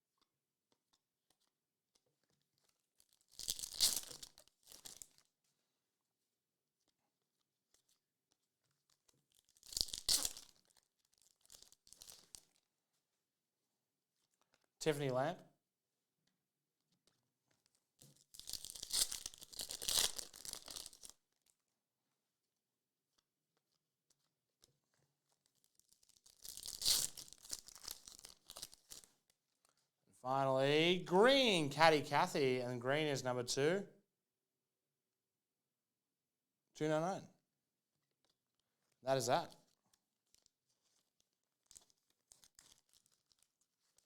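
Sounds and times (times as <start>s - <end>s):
foil wrapper crinkling: 8.6s - 12.6s, 17.5s - 21.6s, 24.8s - 29.8s, 39.7s - 44.0s
foil wrapper ripping: 9.4s - 12.6s, 18.2s - 21.1s, 25.7s - 29.1s, 41.6s - 44.0s.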